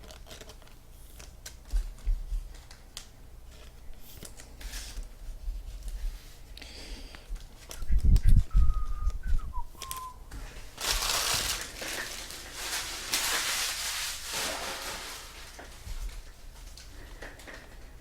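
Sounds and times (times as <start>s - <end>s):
cards and packaging rustling: 0.0s - 6.2s, 7.2s - 17.7s
short whistled notes: 8.4s - 10.2s.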